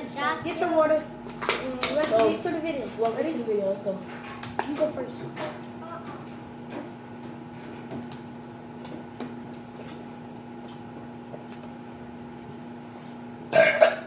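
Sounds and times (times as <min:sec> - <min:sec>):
room hum: 0:00.0 - 0:14.0
person burping: 0:13.5 - 0:14.0.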